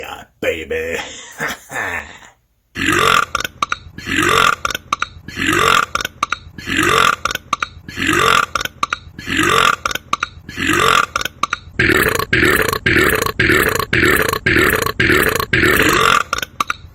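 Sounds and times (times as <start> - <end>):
man belching: 0.9 - 16.5.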